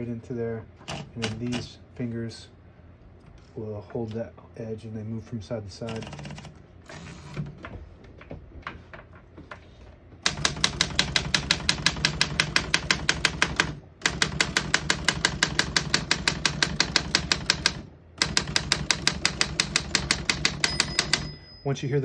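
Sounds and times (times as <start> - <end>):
manual typewriter typing: 0.9 - 1.7, 5.8 - 7.4, 10.2 - 21.4.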